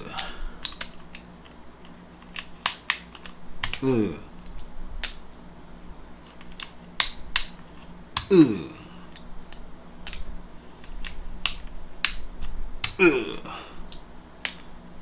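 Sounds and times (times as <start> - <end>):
keycaps clicking onto switches: 0.1 - 5.4.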